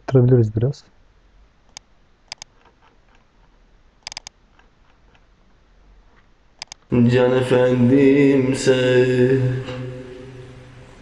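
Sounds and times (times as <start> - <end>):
faint background hiss: 0.0 - 7.1
computer mouse clicks: 1.7 - 3.2, 4.0 - 5.2, 6.6 - 6.9.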